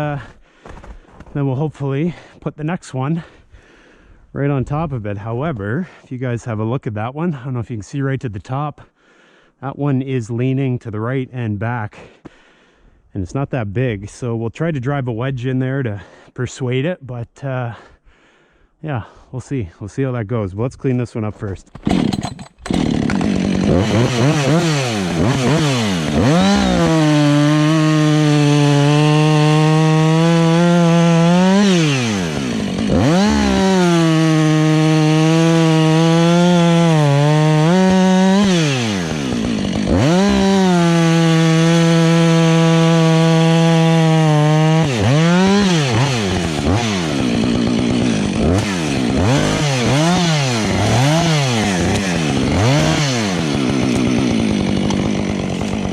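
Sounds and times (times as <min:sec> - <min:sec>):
chainsaw cutting wood: 0:21.7 - 0:55.9.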